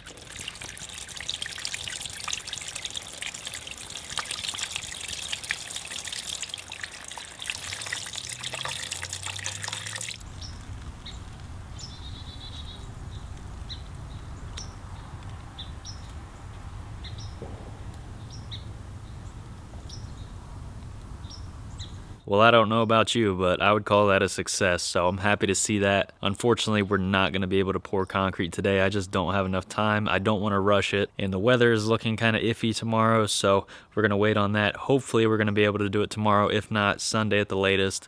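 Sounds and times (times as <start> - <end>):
water running and splashing: 0.0 - 19.8
birds chirping: 0.0 - 23.0
low hum: 8.4 - 22.3.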